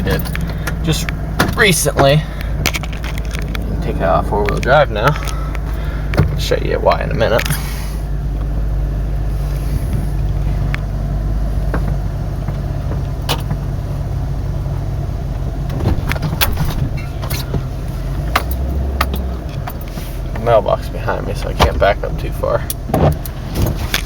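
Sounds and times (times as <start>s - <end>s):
sharp clicks and knocks: 0.0s - 6.4s, 15.6s - 20.5s
truck engine running: 0.0s - 24.0s.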